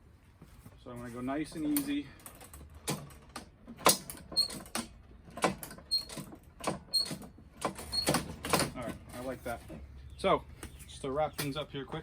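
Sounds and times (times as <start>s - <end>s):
sharp metallic clicks and knocks: 1.6s - 9.0s.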